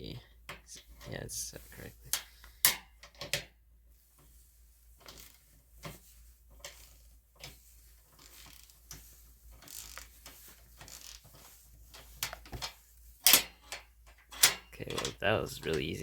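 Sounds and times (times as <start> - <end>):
ratchet clicking: 8.2 - 11.2.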